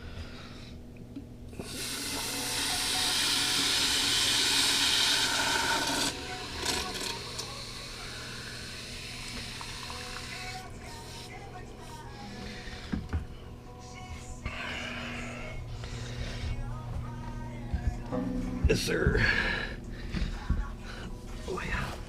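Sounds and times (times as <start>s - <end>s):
steady low hum: 0.0s - 22.0s
water pouring into filter housing: 1.6s - 7.8s.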